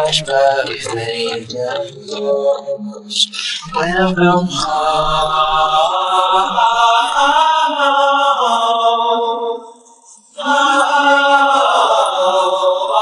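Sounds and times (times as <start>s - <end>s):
person singing long gliding notes: 0.0s - 9.5s.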